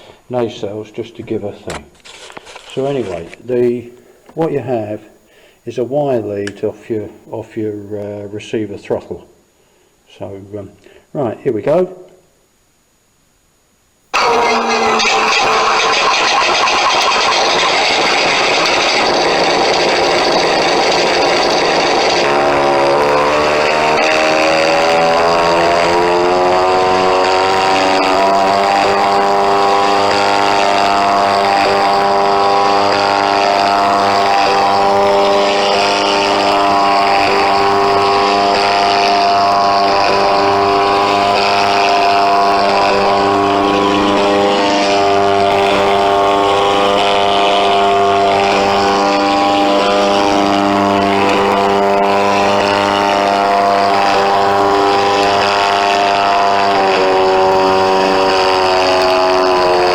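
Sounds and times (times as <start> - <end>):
simulated bomber engine sound: 14.1 - 59.9.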